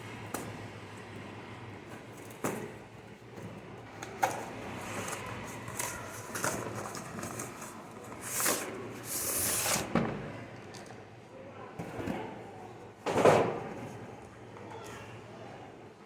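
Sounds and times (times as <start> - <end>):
packaging rustling and scraping: 4.8 - 9.9.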